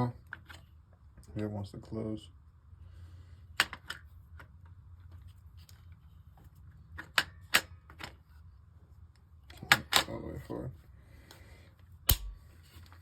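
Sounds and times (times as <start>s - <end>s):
rifle trigger metallic clicks: 12.1s - 12.4s.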